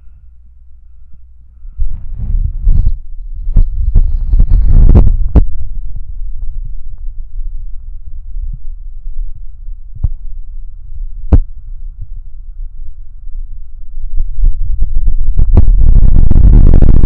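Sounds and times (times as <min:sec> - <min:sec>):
heartbeat pulse: 0:01.7 - 0:06.8, 0:09.9 - 0:10.3, 0:11.2 - 0:12.2, 0:14.1 - 0:17.0.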